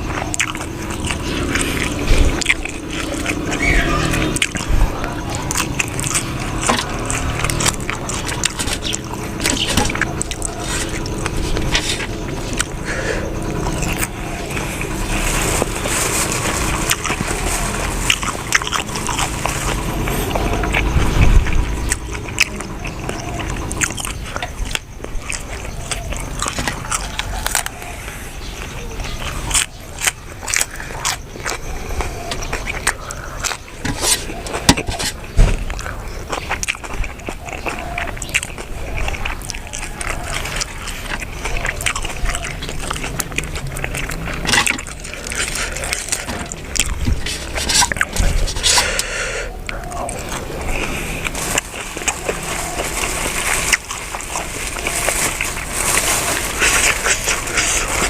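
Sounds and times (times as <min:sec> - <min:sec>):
close chewing with wet clicks: 0:00.0 - 0:58.0.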